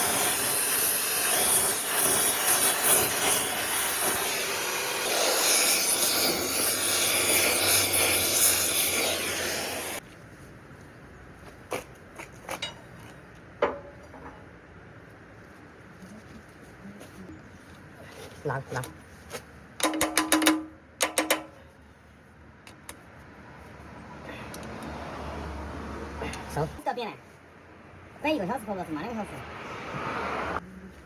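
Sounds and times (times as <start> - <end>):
loud steady air hiss: 0.0 - 10.0.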